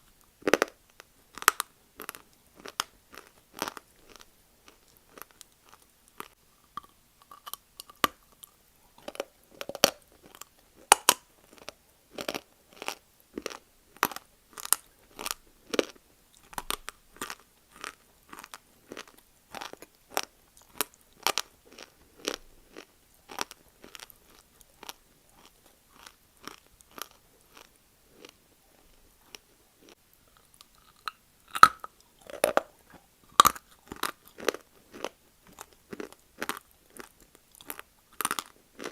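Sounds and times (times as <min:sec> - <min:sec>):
person chewing crunchy clay: 0:00.4 - 0:38.9.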